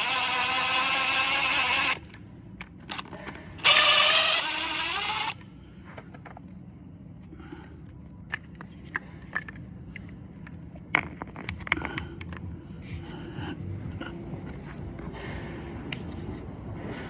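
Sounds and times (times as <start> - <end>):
steady low hum: 0.0 - 17.0
hand tools clicking and knocking: 8.3 - 12.6.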